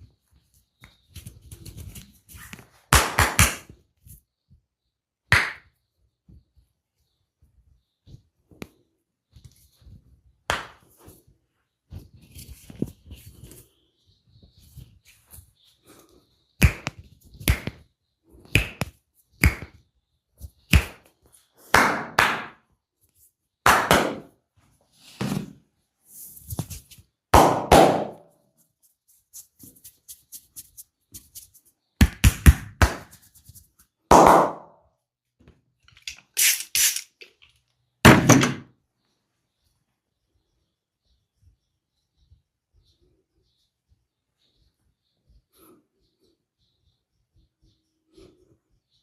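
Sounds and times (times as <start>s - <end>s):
massage slaps and thumps: 2.5s - 3.8s, 9.8s - 11.0s, 16.6s - 17.8s, 18.5s - 19.8s, 20.7s - 21.1s, 23.6s - 24.3s, 27.4s - 28.2s, 32.0s - 33.2s, 34.1s - 34.7s.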